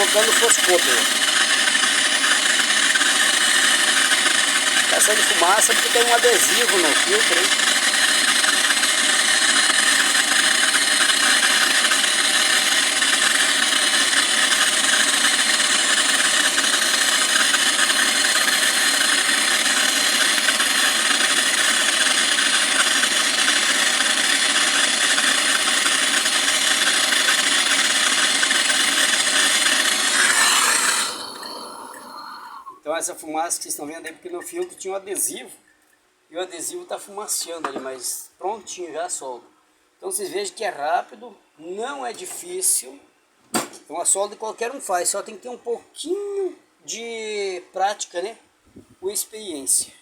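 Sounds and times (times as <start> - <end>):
torch flame hissing: 0.0 - 32.8.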